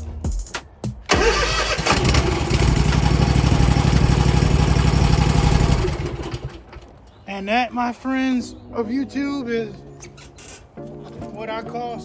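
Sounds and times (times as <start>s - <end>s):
mower engine cranking and running: 1.1s - 7.0s.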